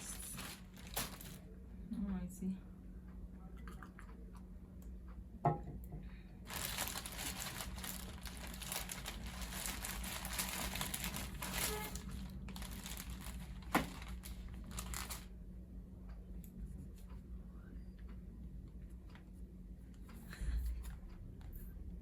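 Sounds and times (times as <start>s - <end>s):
packaging crinkling: 0.0s - 1.4s, 6.5s - 15.3s.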